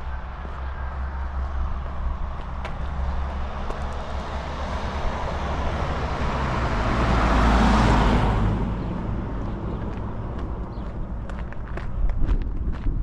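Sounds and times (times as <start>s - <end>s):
wind rumble on microphone: 0.0s - 13.0s
car driving past: 2.5s - 10.7s.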